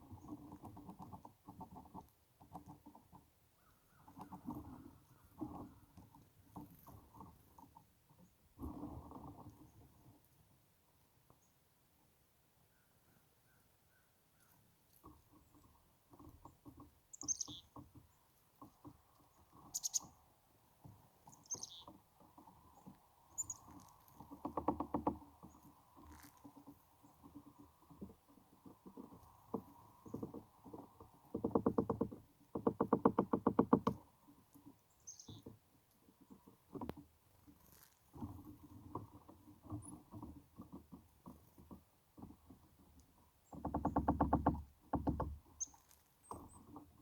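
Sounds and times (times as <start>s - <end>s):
soft tapping and rustling: 0.0s - 9.9s, 14.4s - 20.0s, 20.8s - 47.0s
chickadees calling: 17.1s - 17.7s, 19.6s - 20.2s, 21.4s - 21.9s.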